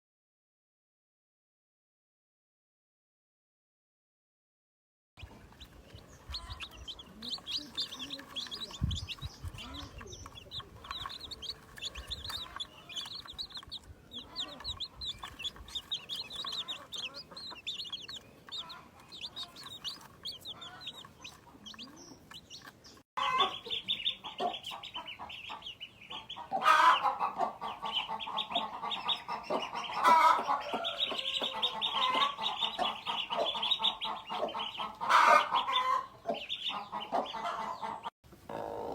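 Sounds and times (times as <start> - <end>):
chicks peeping: 5.2 - 38.9
hens clucking: 5.2 - 38.9.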